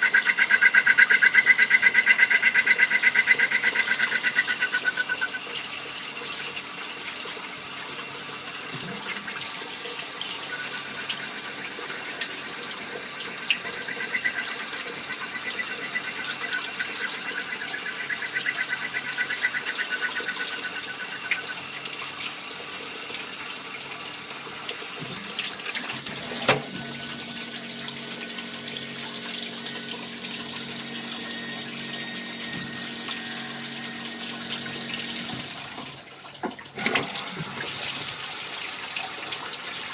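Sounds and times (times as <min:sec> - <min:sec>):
lathe ticking and tones: 0:00.0 - 0:05.5, 0:26.2 - 0:35.3.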